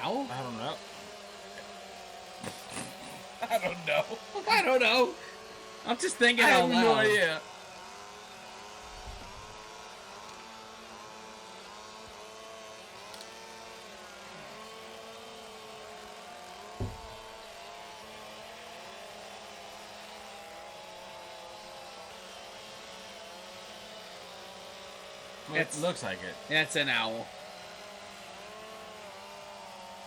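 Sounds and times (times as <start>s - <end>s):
chainsaws revving: 0.0s - 30.0s
short thump: 16.8s - 17.4s.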